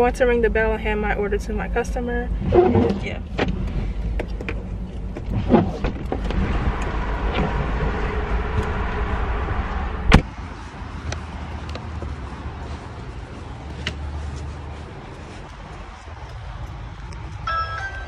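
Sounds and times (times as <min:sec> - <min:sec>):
steady car noise: 0:00.0 - 0:18.0
car door shutting: 0:02.4 - 0:07.8, 0:10.0 - 0:10.3.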